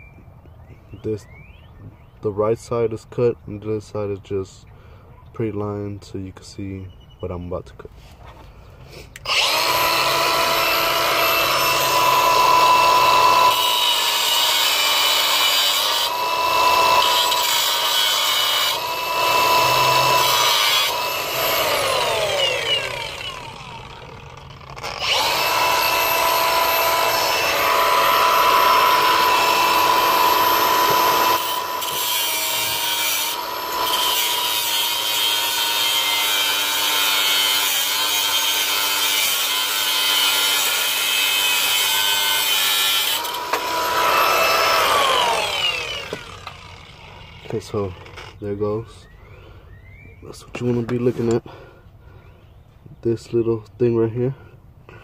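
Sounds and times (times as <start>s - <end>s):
power tool cutting casing: 9.1s - 48.5s.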